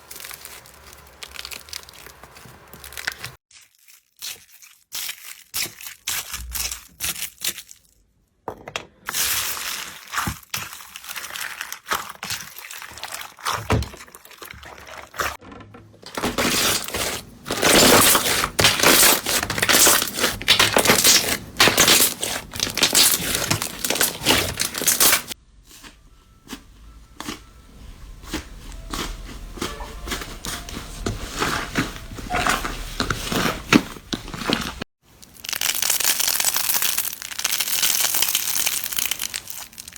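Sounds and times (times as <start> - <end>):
slime crackling and popping: 0.0 - 7.8, 16.3 - 25.4, 28.3 - 39.9.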